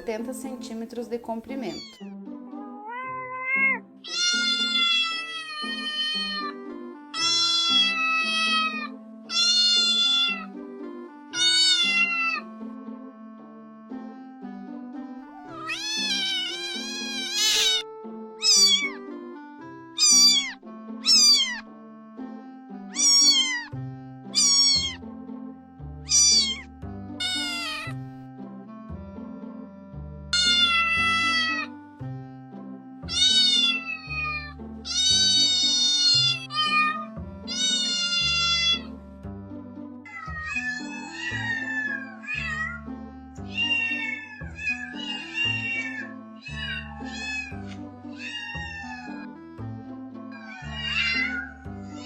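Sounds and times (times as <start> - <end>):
background music: 0.0 - 52.0
kittens meowing: 1.6 - 6.6, 7.2 - 10.6, 11.4 - 12.5, 15.4 - 17.8, 18.4 - 19.0, 20.0 - 21.6, 22.9 - 25.0, 26.0 - 28.0, 30.4 - 31.7, 33.1 - 38.9, 40.1 - 49.4, 50.3 - 52.0.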